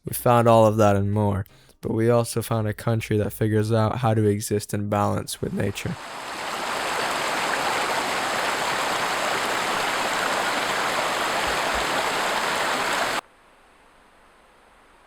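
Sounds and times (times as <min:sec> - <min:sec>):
rushing water: 0:05.7 - 0:13.2.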